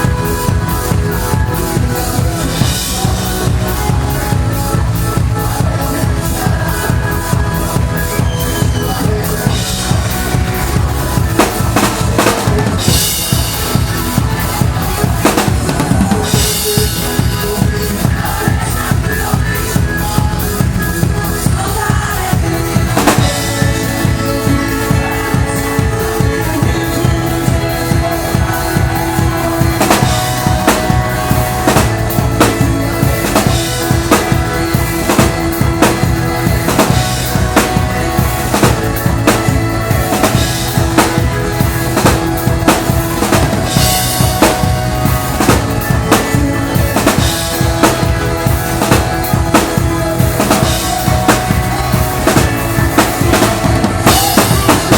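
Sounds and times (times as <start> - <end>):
live band music: 0.0 - 54.9
kick and snare drum pattern: 21.9 - 54.9.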